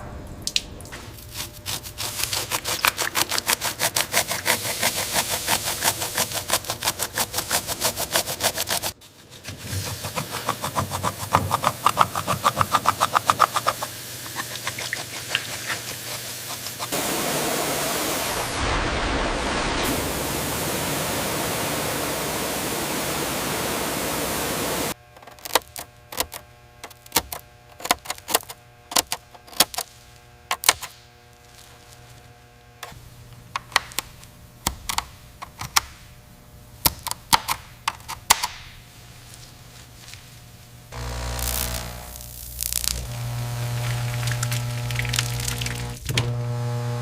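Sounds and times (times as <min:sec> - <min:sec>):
steady hiss: 0:11.2 - 0:25.0, 0:38.7 - 0:46.0
faint steady hum: 0:19.7 - 0:47.0.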